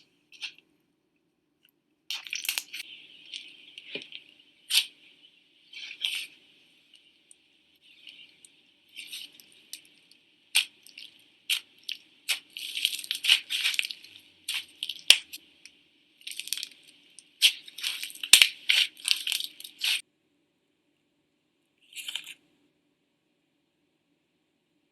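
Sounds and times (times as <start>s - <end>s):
slime squished by hand: 10.5s - 15.4s.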